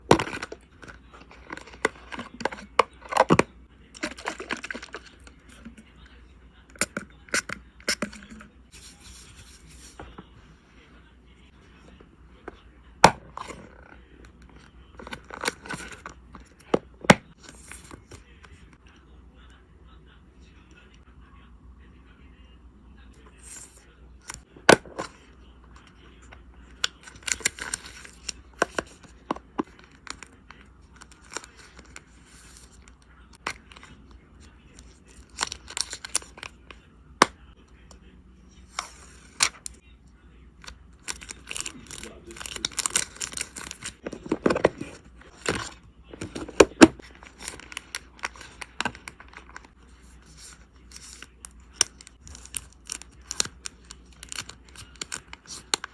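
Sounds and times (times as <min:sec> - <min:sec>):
plastic sleeves crinkling: 0:41.0 - 0:55.9.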